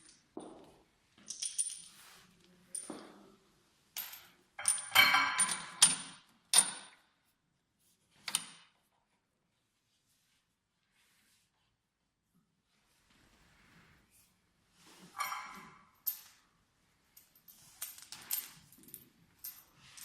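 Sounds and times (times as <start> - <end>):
ringing metallic clanks: 15.2 - 15.9
small hard parts clinking: 15.2 - 16.4.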